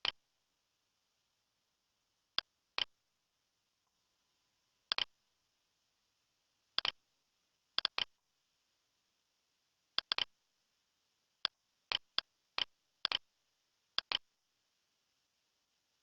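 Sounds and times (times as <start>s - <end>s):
sharp clicks: 4.9s - 5.1s, 7.8s - 8.1s, 10.0s - 10.3s, 11.4s - 13.2s, 14.0s - 14.2s.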